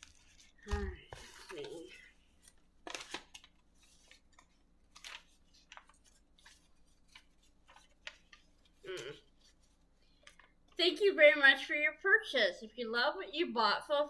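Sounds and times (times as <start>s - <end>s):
paper and mailer rustling: 0.0s - 10.6s.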